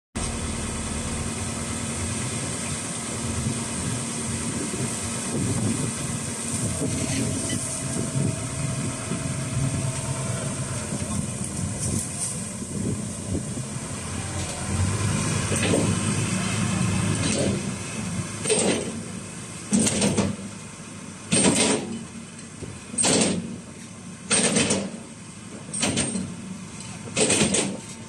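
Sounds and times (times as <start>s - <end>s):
thin high whine: 0.2s - 18.1s
excavator diesel engine running: 0.2s - 28.0s.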